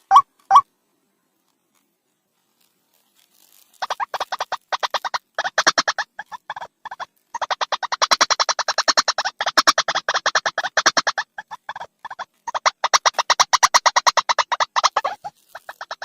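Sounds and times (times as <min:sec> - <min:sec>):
waterhen harsh repeated call: 0:03.8 - 0:16.0.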